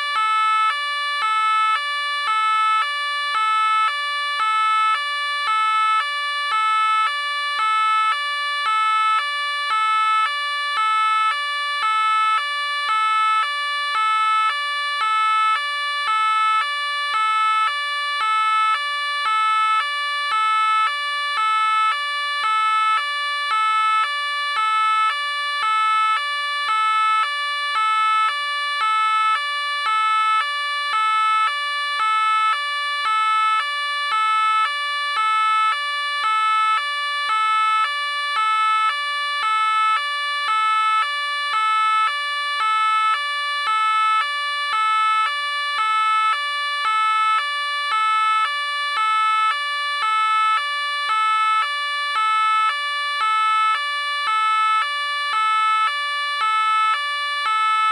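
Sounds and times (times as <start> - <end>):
police car two-tone siren: 0.0 - 57.9.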